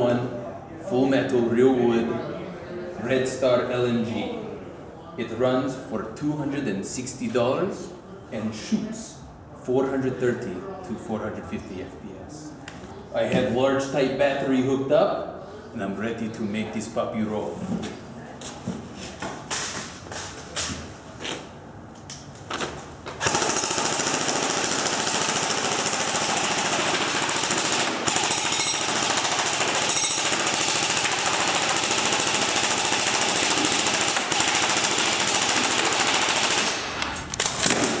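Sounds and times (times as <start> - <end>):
airsoft gun full-auto rattle: 23.2 - 38.0.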